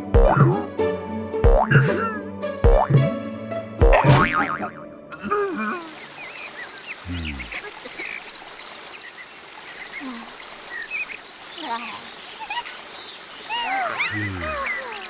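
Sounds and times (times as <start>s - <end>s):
high squeaky chirps: 13.5s - 15.0s.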